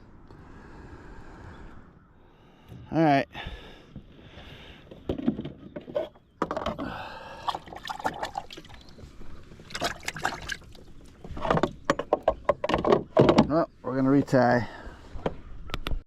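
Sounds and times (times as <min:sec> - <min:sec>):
light water sounds: 0:07.4 - 0:11.3.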